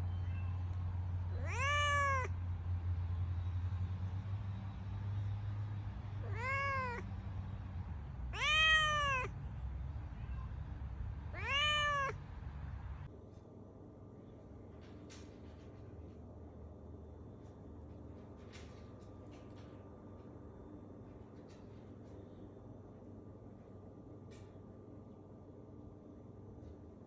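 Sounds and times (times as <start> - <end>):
cat meowing: 1.3 - 2.4, 6.2 - 7.1, 8.3 - 9.4, 11.3 - 12.2.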